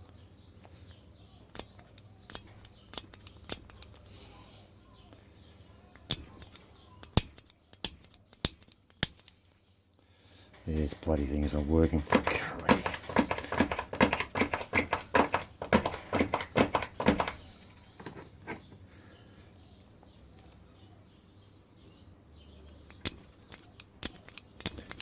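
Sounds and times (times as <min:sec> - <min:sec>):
center punch clicking: 0:12.0 - 0:17.4.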